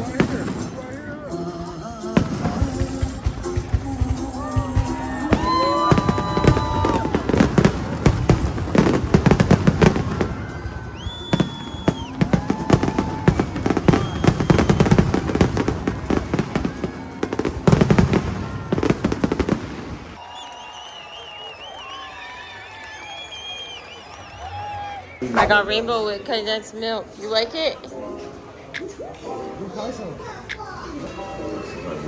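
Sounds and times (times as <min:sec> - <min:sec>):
fireworks bangs and crackles: 0:00.0 - 0:01.3, 0:02.0 - 0:20.3.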